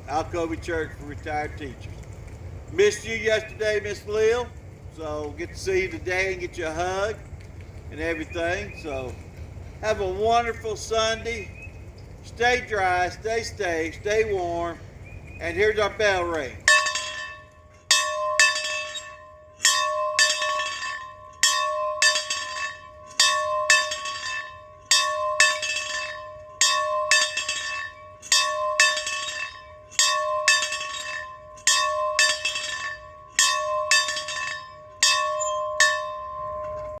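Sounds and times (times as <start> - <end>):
bell ringing: 16.7 - 37.0.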